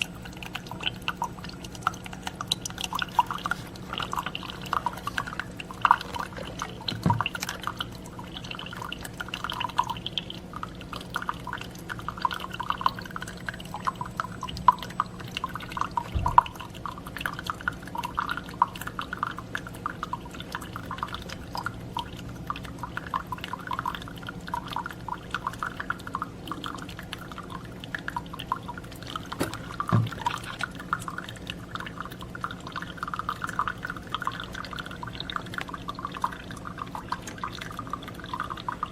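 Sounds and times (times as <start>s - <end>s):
coffee dripping into a cup: 0.0s - 38.9s
coffee maker humming: 0.0s - 38.9s
soft knocks: 29.4s - 30.2s.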